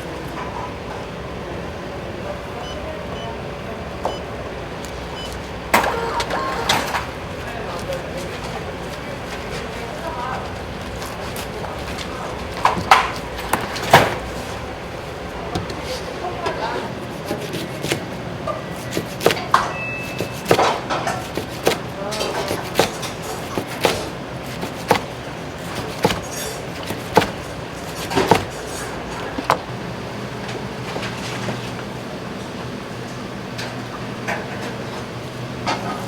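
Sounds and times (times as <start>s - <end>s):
sharp knocks: 22.5s - 28.6s.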